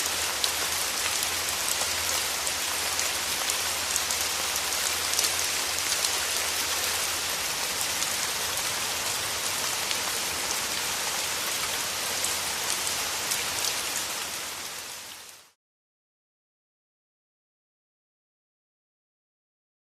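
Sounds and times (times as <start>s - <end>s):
steady rain with pattering drops: 0.0s - 15.6s.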